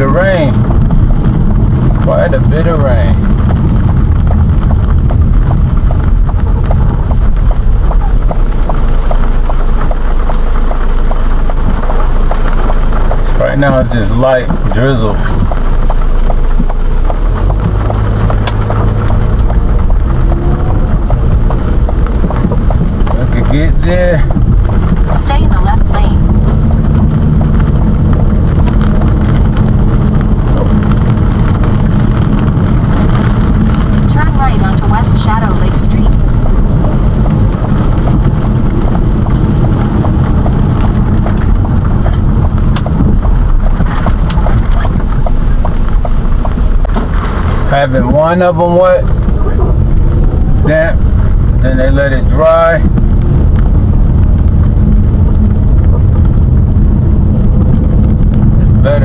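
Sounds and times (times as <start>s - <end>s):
faint regular ticking: 0.0s - 59.0s
vehicle engine and road noise: 0.0s - 59.0s
turn signal clicking: 3.3s - 23.5s, 24.2s - 47.7s.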